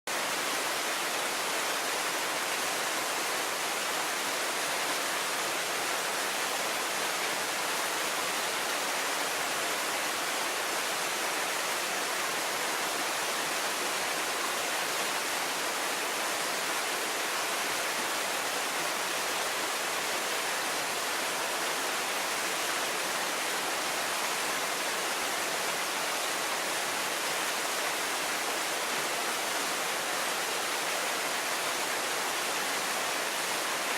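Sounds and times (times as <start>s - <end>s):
small waterfall splashing: 0.0s - 33.9s.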